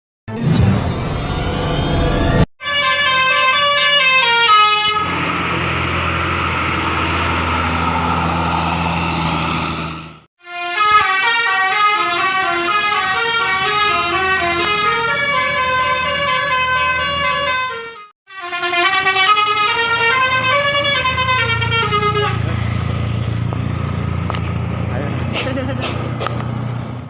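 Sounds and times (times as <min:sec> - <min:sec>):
bus horn multi-tone melody: 0:02.6 - 0:07.8, 0:09.5 - 0:22.6
bus engine low rumble: 0:03.5 - 0:10.2, 0:18.8 - 0:27.0.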